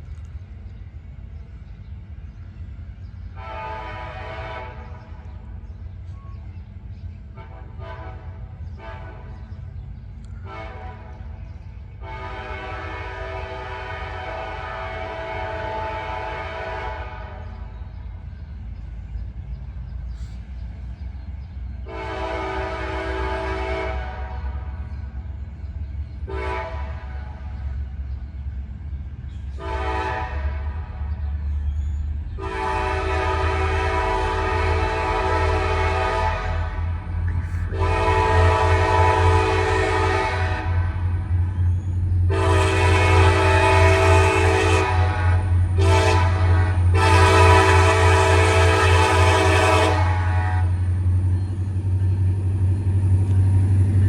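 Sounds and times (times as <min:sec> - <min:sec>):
diesel locomotive rumbling: 0:00.0 - 0:54.0
locomotive air horn blasts: 0:03.3 - 0:05.2, 0:07.3 - 0:09.6, 0:10.3 - 0:17.7, 0:21.8 - 0:25.1, 0:26.2 - 0:28.5, 0:29.4 - 0:31.2, 0:32.4 - 0:41.5, 0:42.2 - 0:51.0.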